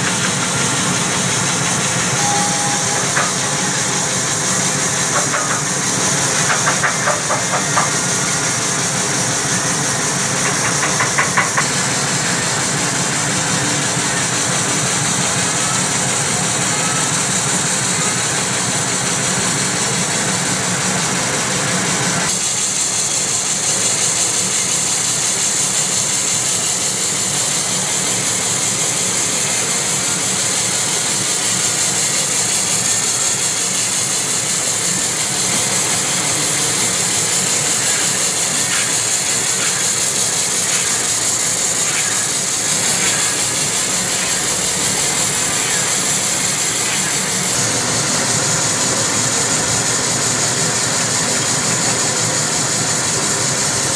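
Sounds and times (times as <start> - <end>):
wood-turning lathe running: 0.0 - 53.9.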